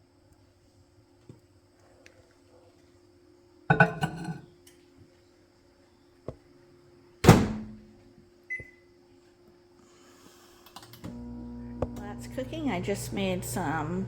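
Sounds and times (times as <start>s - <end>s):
microwave door thunk: 7.2s - 7.8s
keypad beep: 8.5s - 8.8s.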